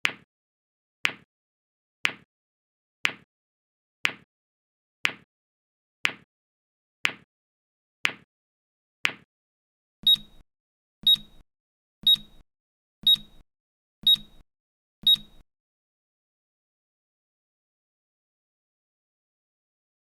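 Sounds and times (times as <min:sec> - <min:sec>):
sharp click: 0:10.0 - 0:10.4, 0:11.0 - 0:11.4, 0:12.0 - 0:12.4, 0:13.0 - 0:13.4, 0:14.0 - 0:14.4, 0:15.0 - 0:15.4
timer alarm beeps: 0:10.0 - 0:10.4, 0:11.0 - 0:11.4, 0:12.0 - 0:12.4, 0:13.0 - 0:13.4, 0:14.0 - 0:14.4, 0:15.0 - 0:15.4.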